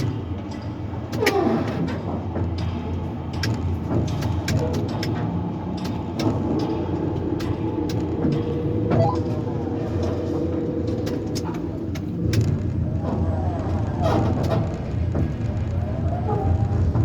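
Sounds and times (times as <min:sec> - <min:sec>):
crane machinery hum: 0:00.0 - 0:17.0
scattered clicks: 0:02.6 - 0:12.8
steady machine whine: 0:05.2 - 0:14.0.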